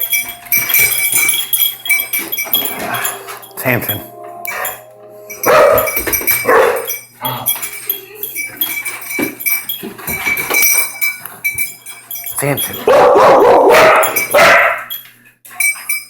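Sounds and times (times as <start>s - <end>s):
dog barking: 5.5s - 6.9s, 12.8s - 14.9s.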